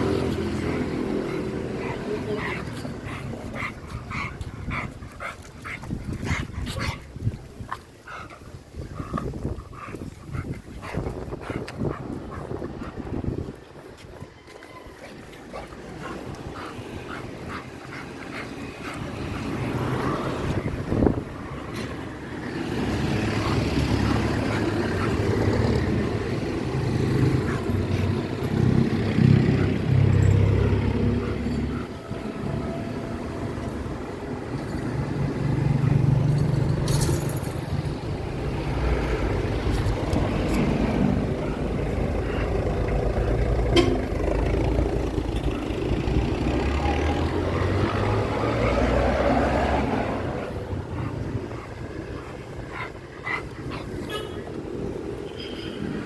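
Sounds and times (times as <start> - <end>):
motor vehicle rumbling: 0.0 - 56.0.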